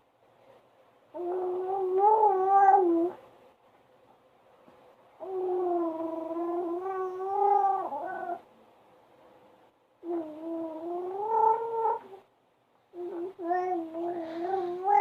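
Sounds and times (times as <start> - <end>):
baby making droning vocal noise: 10.0 - 12.2, 12.9 - 15.0.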